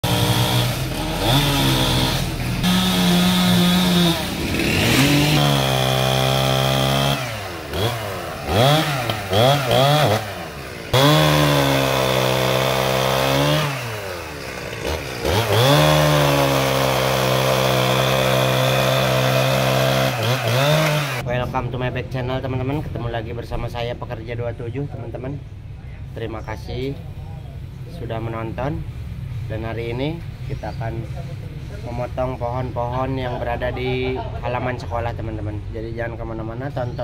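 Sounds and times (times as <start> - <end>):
petrol chainsaw revving: 0.0 - 21.3.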